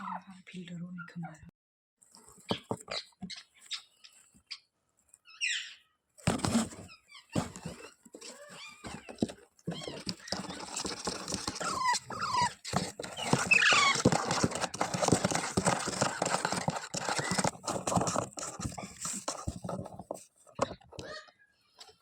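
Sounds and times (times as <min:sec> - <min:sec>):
parrot squawks and chirps: 0:02.9 - 0:05.9
clicks and rustling: 0:06.2 - 0:21.1.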